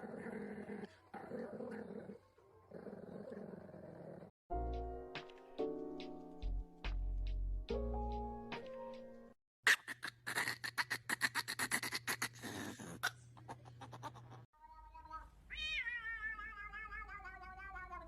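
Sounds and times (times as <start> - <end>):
cat meowing: 14.7 - 18.0.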